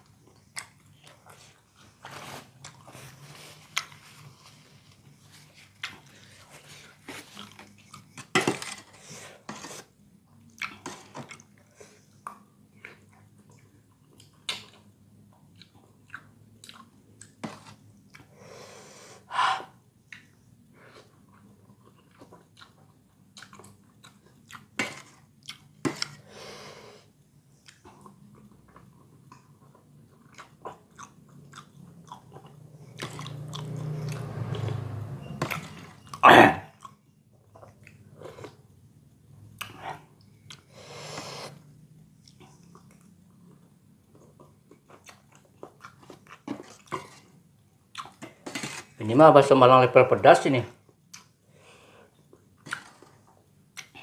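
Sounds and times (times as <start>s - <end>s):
chewing food: 0.0s - 1.9s, 10.3s - 18.3s, 20.1s - 26.2s, 27.6s - 38.7s, 42.2s - 48.9s, 52.1s - 54.0s.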